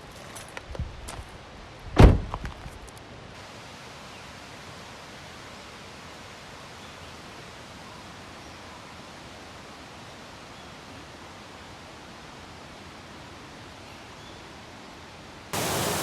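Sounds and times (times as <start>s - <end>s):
mountain stream rushing: 15.5s - 16.0s.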